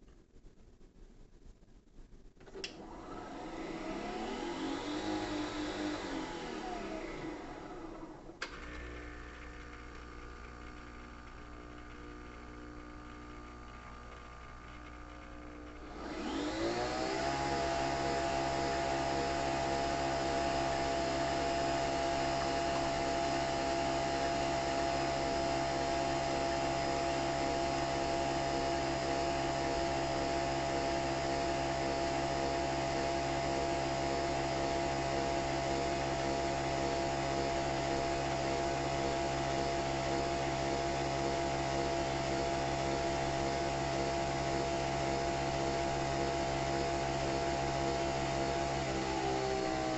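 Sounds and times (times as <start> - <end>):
coffee machine motor whirring: 2.8 - 27.8.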